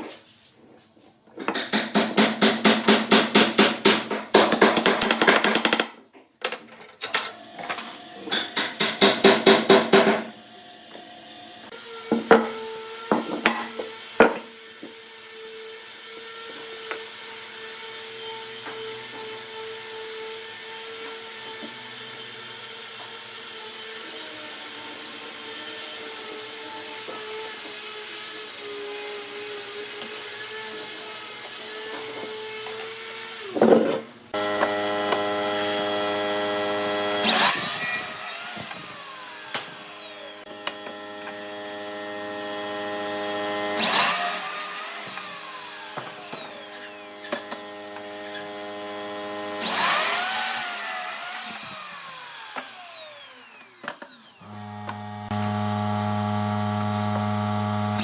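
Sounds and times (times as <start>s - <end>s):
wood lathe humming: 33.8s - 58.0s.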